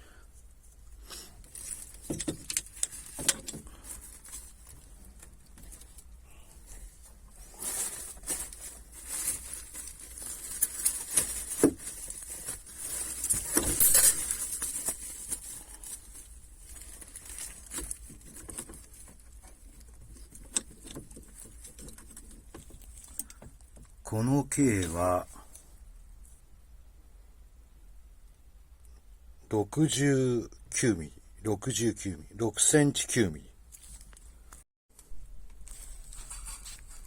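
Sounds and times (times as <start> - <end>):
parts and tools clicking and rustling: 0.7 - 24.0.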